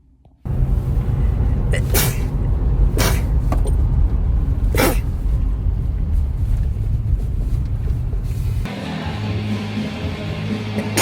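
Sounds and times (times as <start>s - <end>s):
steady low rumble: 0.0s - 9.2s
woman sneezing: 1.8s - 2.3s, 3.0s - 3.3s, 4.8s - 5.2s.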